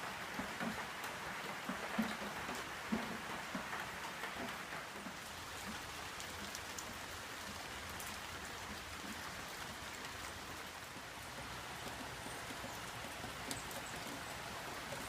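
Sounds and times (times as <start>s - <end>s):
steady rain falling: 0.0s - 15.0s
drops ticking on surfaces: 10.7s - 15.0s.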